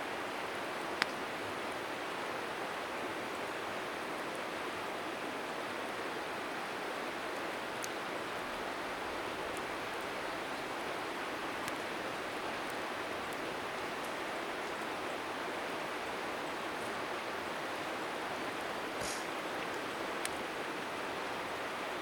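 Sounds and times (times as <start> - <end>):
river rushing: 0.0 - 22.0
bonfire pops and crackles: 19.0 - 20.5.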